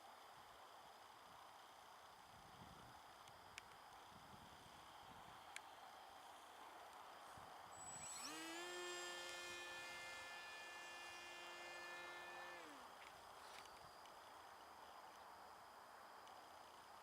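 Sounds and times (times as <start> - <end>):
electric motor and propeller whine: 6.2 - 14.8.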